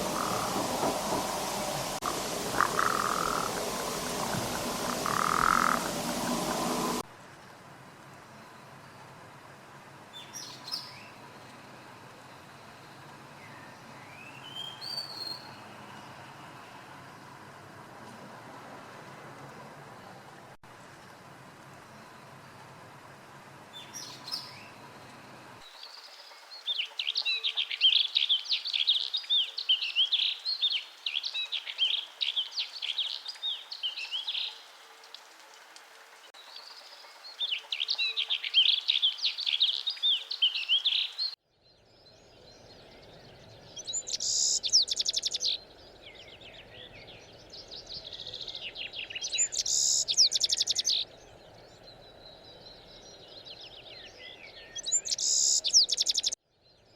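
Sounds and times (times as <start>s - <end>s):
high buzzy birdsong: 0.0s - 7.0s, 37.7s - 56.9s
songbirds singing: 0.0s - 7.0s, 23.7s - 35.2s, 36.3s - 56.9s.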